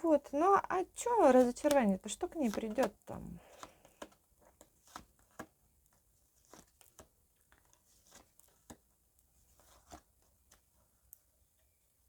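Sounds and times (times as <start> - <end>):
cards rustling and clicking: 0.9 - 10.8.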